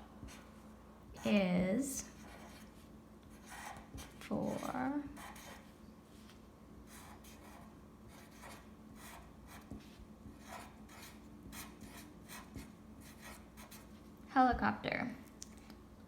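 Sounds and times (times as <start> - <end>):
crayon scratching on paper: 2.0 - 5.7, 6.9 - 13.9.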